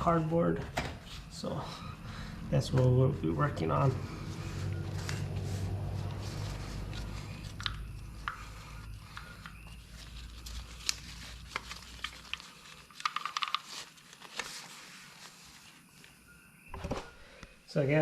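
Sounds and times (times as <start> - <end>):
low hum: 1.6 - 9.6
small parts clicking and rustling: 6.9 - 14.8.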